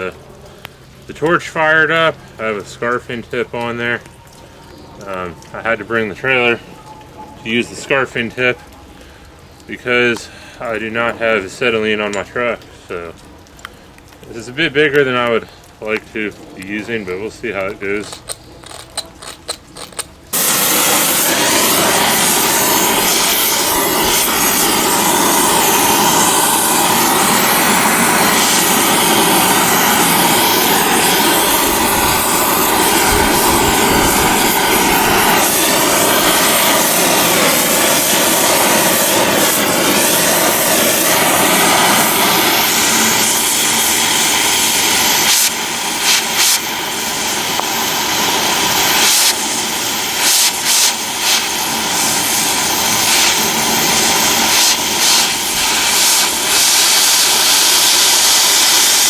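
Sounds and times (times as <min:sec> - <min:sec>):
loud steady torch hiss: 0:00.0 - 0:59.0
torch clicks: 0:18.0 - 0:59.0.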